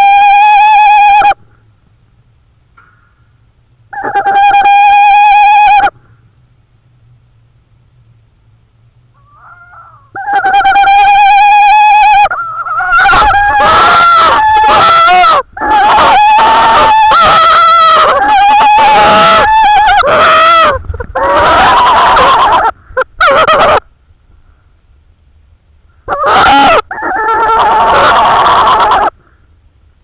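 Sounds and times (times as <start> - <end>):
owls calling harshly: 0.0 - 1.4, 3.9 - 6.0, 9.2 - 23.9, 26.0 - 29.2.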